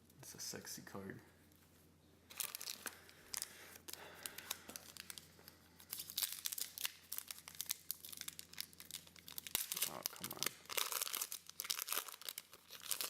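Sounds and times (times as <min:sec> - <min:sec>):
foil wrapper crinkling and tearing: 0:02.3 - 0:13.0.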